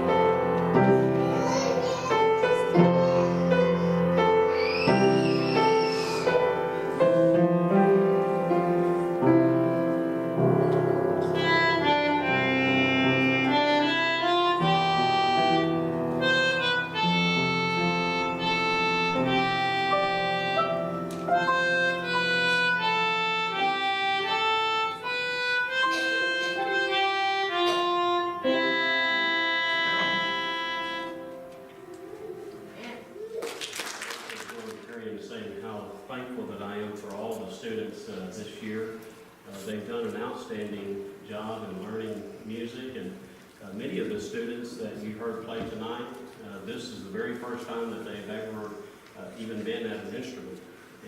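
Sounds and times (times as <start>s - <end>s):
piano melody over chords: 0.0s - 32.8s.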